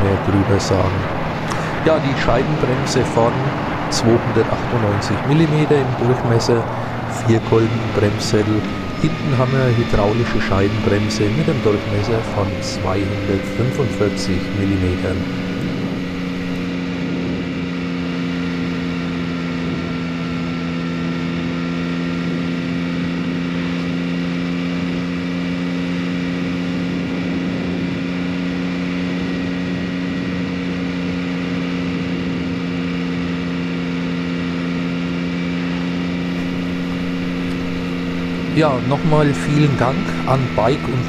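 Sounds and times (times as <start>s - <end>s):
motorcycle engine running: 0.0s - 41.0s
wind and road noise: 0.0s - 41.0s.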